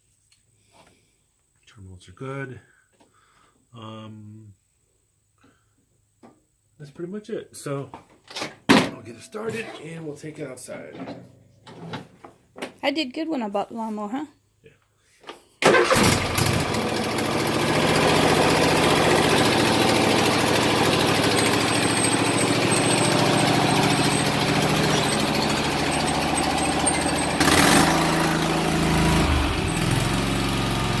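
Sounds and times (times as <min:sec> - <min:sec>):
riding lawn mower engine: 0:15.6 - 0:31.0.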